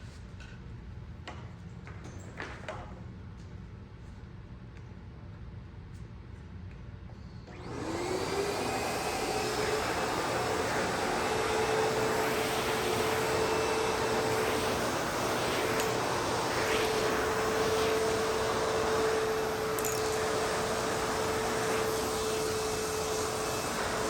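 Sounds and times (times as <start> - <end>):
backpack vacuum motor whining: 7.5 - 24.0.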